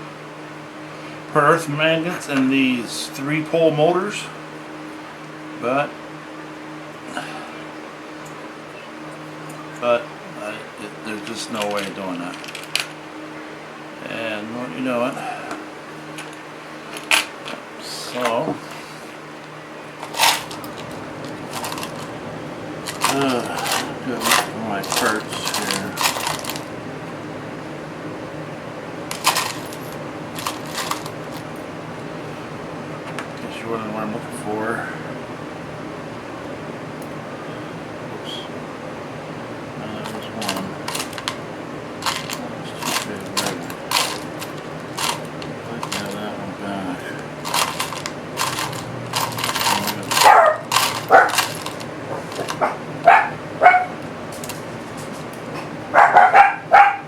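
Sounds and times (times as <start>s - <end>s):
steady low hum: 0.0s - 56.9s
small metal parts clinking: 11.2s - 13.0s, 16.1s - 17.6s, 20.0s - 22.2s, 22.8s - 26.7s, 29.1s - 31.6s, 40.0s - 41.4s, 42.0s - 46.2s, 47.2s - 52.8s
dog barking: 50.2s - 51.4s, 52.6s - 54.0s, 55.9s - 57.0s.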